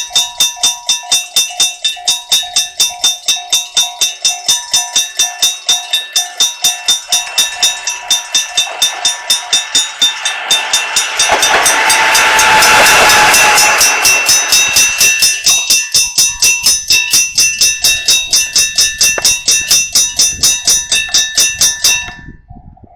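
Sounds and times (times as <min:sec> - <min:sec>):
level crossing alarm clanging: 0:00.0 - 0:22.2
diesel railcar passing: 0:05.1 - 0:16.9.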